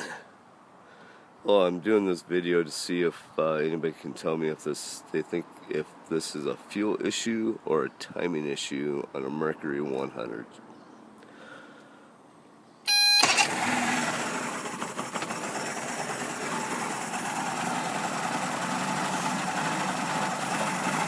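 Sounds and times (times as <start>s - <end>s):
warning horn beep: 12.9s - 13.5s
outboard engine idling rough: 13.5s - 21.0s.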